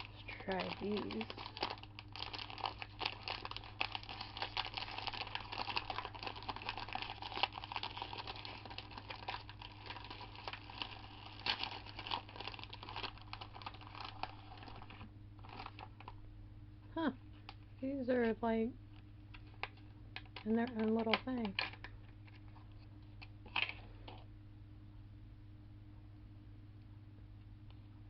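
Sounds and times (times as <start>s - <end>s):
plastic packaging crinkling: 0.0s - 16.2s, 19.4s - 24.2s
steady low hum: 0.0s - 28.0s.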